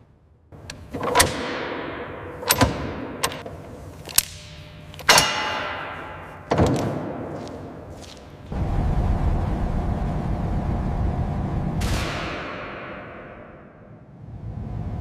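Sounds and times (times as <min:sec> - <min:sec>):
heavy metallic impacts ringing: 0:01.1 - 0:08.4.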